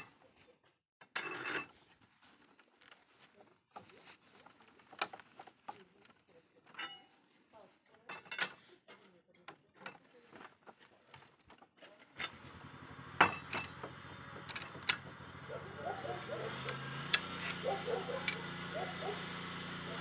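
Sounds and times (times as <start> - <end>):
metal clicks and clanks: 13.2 - 15.2, 16.1 - 18.7.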